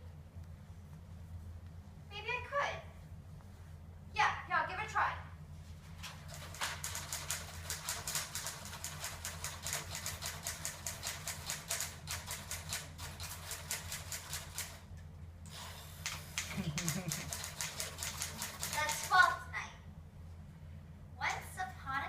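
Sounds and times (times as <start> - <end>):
steady low hum: 0.0 - 22.0
typewriter keys clacking: 6.3 - 14.8, 16.1 - 19.1.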